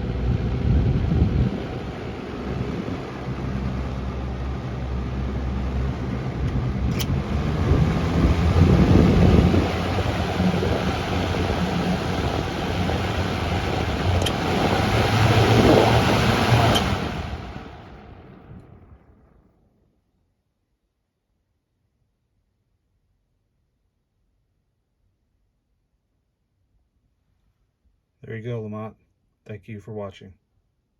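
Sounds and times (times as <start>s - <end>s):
electric fan running: 0.0s - 19.2s.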